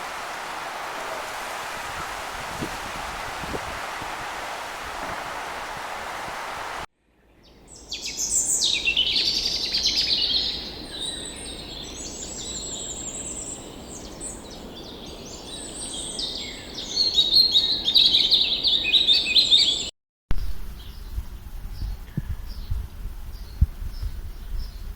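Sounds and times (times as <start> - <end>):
steady rushing noise: 0.0 - 6.9
small birds chirping and trilling: 0.0 - 19.9, 20.8 - 24.9.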